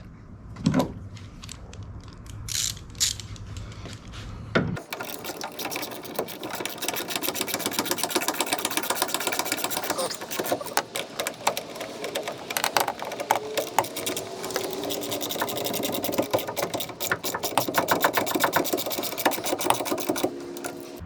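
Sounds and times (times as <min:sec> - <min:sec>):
hand ratchet clicking: 0:04.8 - 0:21.0.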